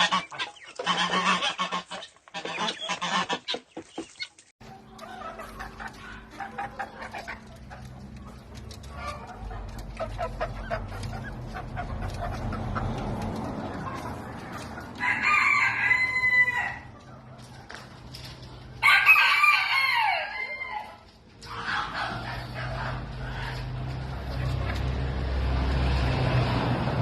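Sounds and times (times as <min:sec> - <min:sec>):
chickens clucking: 0:00.0 - 0:26.5
rooster crowing: 0:15.0 - 0:16.9, 0:18.8 - 0:21.0.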